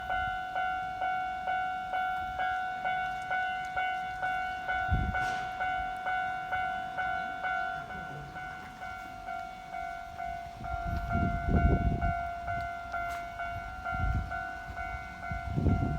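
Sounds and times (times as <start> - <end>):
level-crossing warning bell: 0.0 - 15.9.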